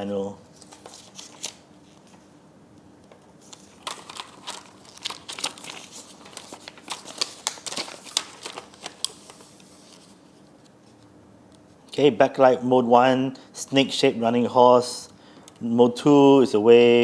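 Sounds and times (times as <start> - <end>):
paper rustling and crinkling: 0.4 - 2.3, 3.4 - 11.0.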